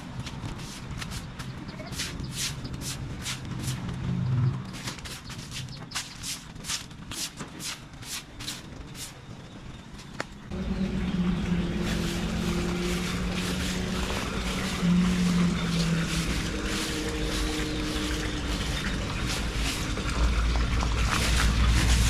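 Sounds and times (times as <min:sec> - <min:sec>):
brush sweeping leaves: 0:00.0 - 0:03.9, 0:04.7 - 0:09.2, 0:11.5 - 0:22.0
small engine running: 0:10.5 - 0:22.0.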